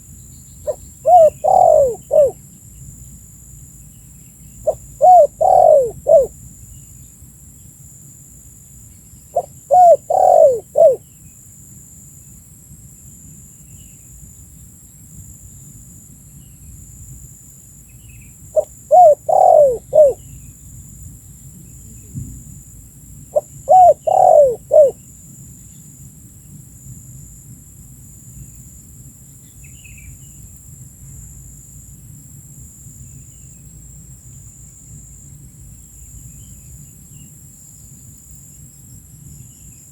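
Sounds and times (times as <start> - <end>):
dove cooing: 0.7 - 2.4, 4.6 - 6.3, 9.4 - 11.0, 18.6 - 20.2, 23.3 - 25.0.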